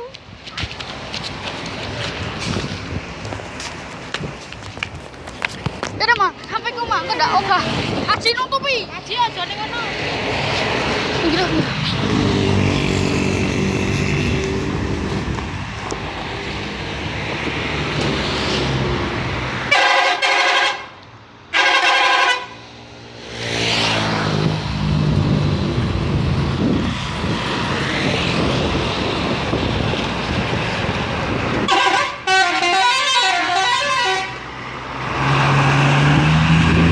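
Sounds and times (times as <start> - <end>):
traffic: 0.0 - 36.9
musical bus horn: 19.7 - 22.6, 31.7 - 34.5.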